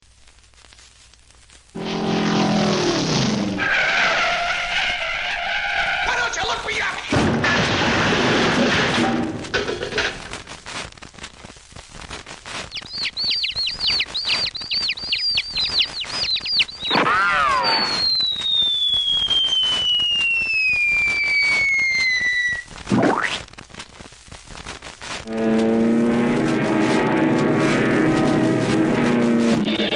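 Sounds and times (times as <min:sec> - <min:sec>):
quick whistle chirps: 0:12.6 - 0:22.7
wobbling whistle sweep: 0:12.7 - 0:23.3
long falling whistle: 0:15.5 - 0:22.7.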